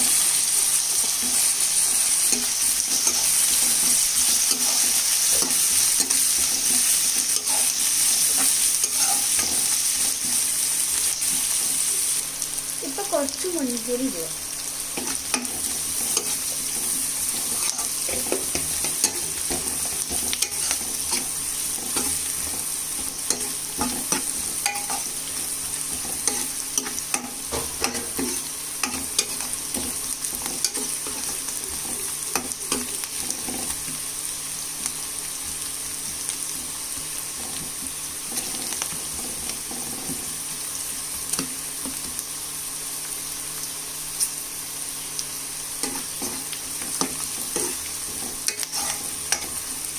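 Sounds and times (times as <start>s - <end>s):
spatula scraping a pan: 0.0s - 11.9s, 15.0s - 34.0s, 36.5s - 40.4s, 45.8s - 49.7s
vegetables sizzling in oil: 0.0s - 49.9s.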